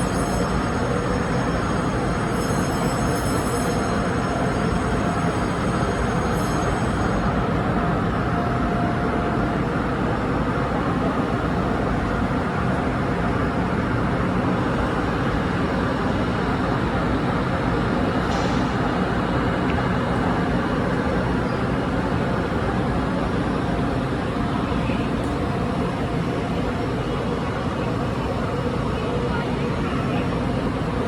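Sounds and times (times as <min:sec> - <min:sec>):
electric train rumble and hum: 0:00.0 - 0:31.0.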